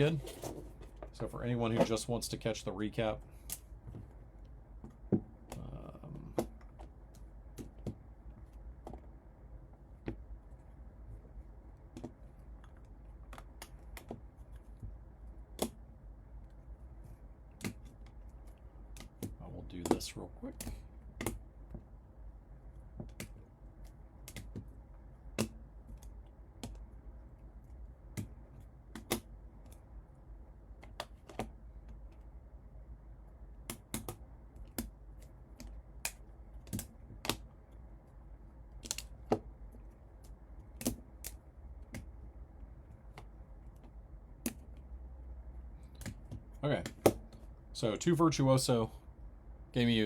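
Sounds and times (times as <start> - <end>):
low steady hum: 0.0 - 50.0.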